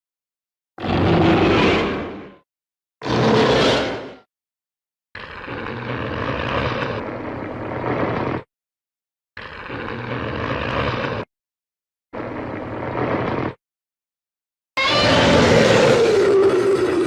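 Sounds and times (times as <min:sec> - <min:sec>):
noisy rumbling monster sound effects: 0:00.8 - 0:02.4, 0:03.0 - 0:04.3.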